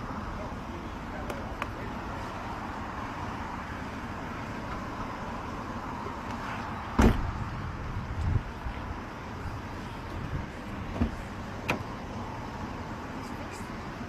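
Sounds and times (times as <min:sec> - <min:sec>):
car background noise outdoors: 0:00.0 - 0:14.0
car door slamming: 0:06.9 - 0:07.4, 0:10.9 - 0:12.0.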